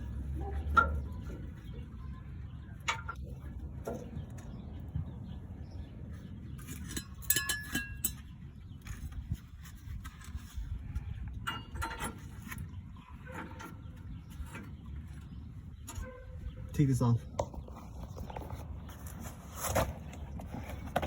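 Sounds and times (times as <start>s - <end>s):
metal parts clanking and rattling: 6.6s - 9.0s, 11.4s - 14.7s.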